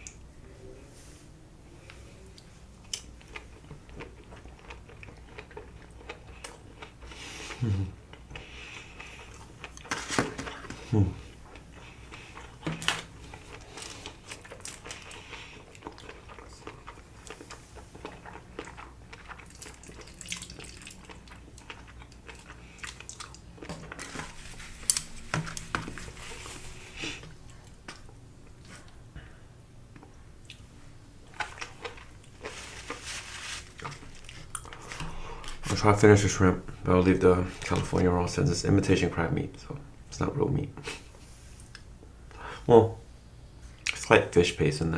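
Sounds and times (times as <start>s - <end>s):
person chewing: 2.3s - 29.0s, 30.0s - 35.7s.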